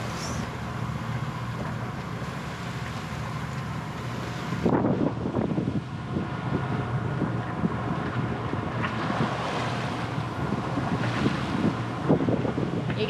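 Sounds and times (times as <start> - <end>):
boat engine running: 0.0 - 13.0
water rushing past: 0.0 - 13.0
wind buffeting microphone: 2.8 - 13.0.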